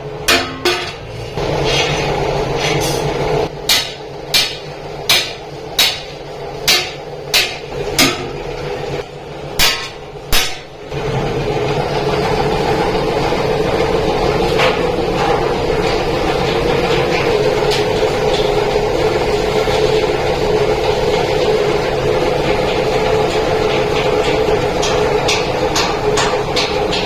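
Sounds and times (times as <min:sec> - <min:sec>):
steady machine noise: 0:00.0 - 0:27.0
hammer striking sheet metal: 0:00.2 - 0:08.6, 0:09.5 - 0:10.8, 0:22.6 - 0:27.0.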